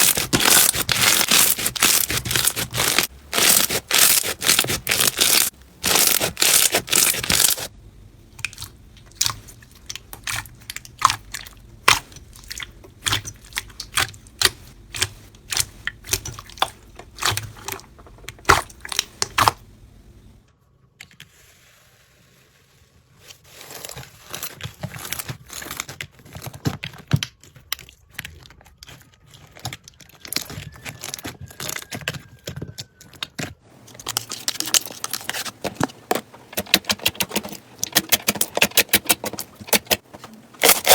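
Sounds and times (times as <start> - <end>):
slime popping and crackling: 0.0 - 7.7, 40.6 - 40.9.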